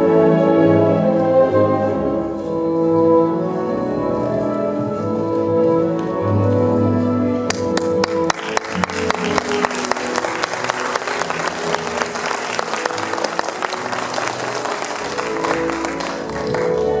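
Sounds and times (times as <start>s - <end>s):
ballet music: 0.0s - 17.0s
audience applauding: 7.5s - 17.0s.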